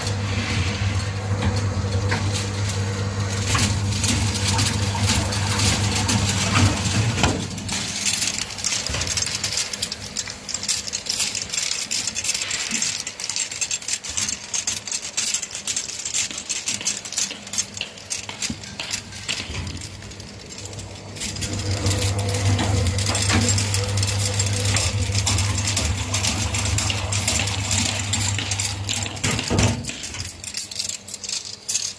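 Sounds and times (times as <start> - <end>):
low motor hum: 0.0 - 10.4, 18.5 - 30.4
bottles clinking and rattling: 1.3 - 31.9.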